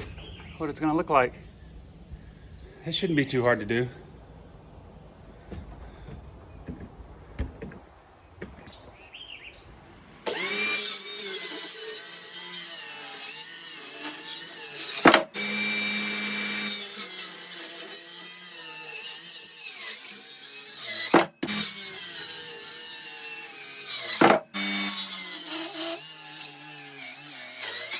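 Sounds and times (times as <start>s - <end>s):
faint knocks: 5.4s - 8.9s
power saw cutting wood: 10.2s - 27.9s.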